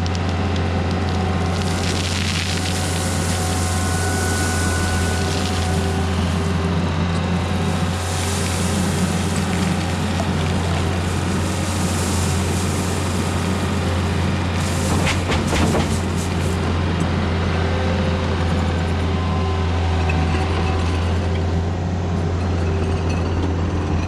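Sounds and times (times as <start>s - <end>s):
diesel engine droning: 0.0s - 24.0s.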